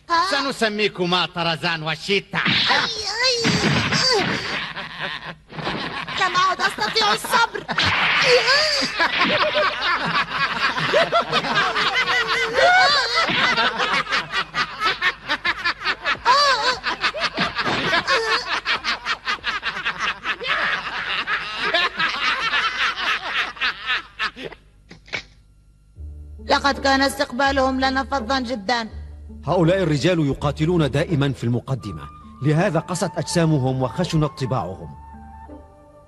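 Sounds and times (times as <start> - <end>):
group of men laughing: 4.4 - 24.7.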